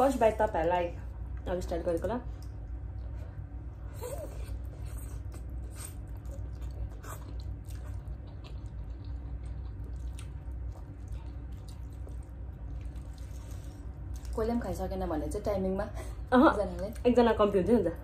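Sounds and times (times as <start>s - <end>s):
steady low hum: 0.0s - 18.0s
people chewing noodles: 2.4s - 14.8s.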